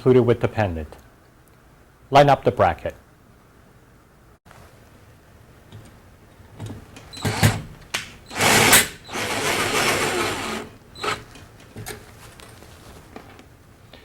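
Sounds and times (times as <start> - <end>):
power driver whirring: 7.1 - 11.3.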